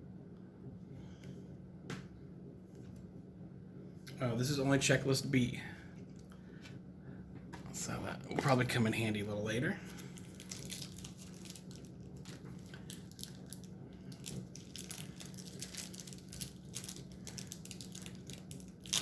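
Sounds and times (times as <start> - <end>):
steady low hum: 0.0 - 19.0
cards and packaging clicking: 10.2 - 19.0.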